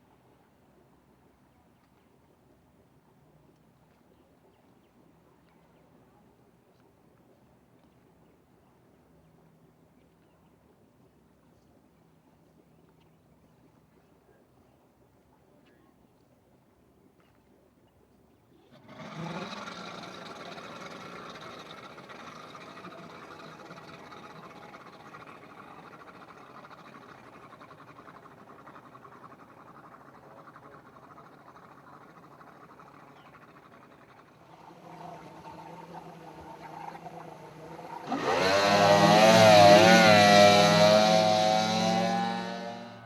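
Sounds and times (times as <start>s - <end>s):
boat engine revving: 18.7s - 43.0s.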